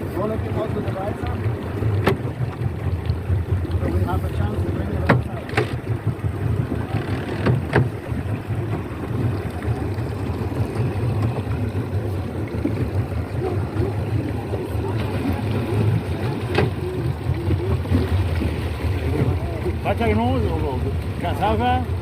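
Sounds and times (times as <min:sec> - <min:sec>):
boat motor running: 0:00.0 - 0:22.0
sharp knocks: 0:02.0 - 0:02.3, 0:07.1 - 0:08.0.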